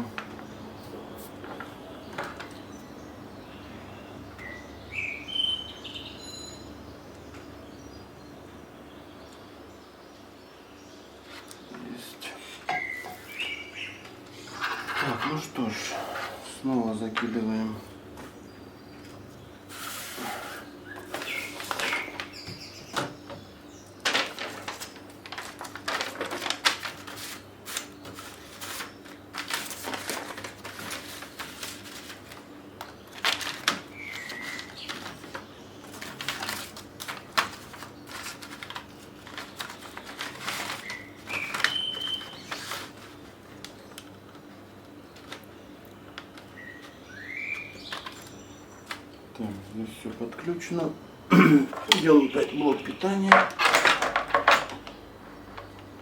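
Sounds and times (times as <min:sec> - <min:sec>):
steady low hum: 0:00.0 - 0:56.0
bird chirps: 0:00.4 - 0:11.2, 0:12.7 - 0:14.6, 0:18.3 - 0:24.0, 0:33.9 - 0:35.9, 0:40.8 - 0:42.7, 0:46.5 - 0:49.3
laptop parts clicking and clattering: 0:32.8 - 0:44.5, 0:53.3 - 0:55.0.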